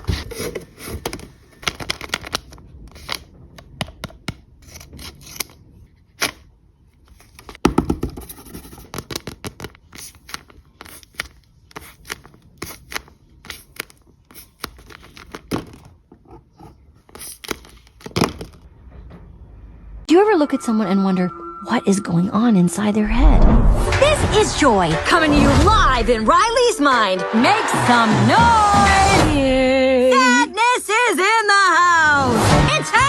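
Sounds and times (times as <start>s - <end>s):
scissors snipping paper: 3.8s - 5.6s, 8.2s - 15.5s
paper rustling: 7.0s - 18.6s.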